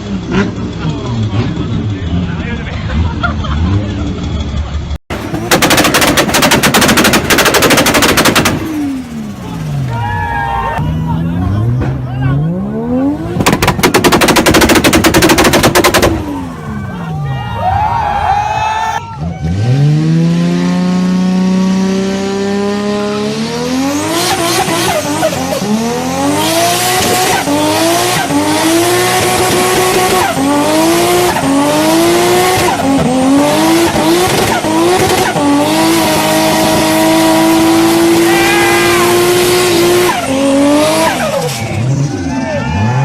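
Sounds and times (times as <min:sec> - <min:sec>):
car engine revving: 0:00.0 - 0:18.4, 0:19.2 - 0:43.0.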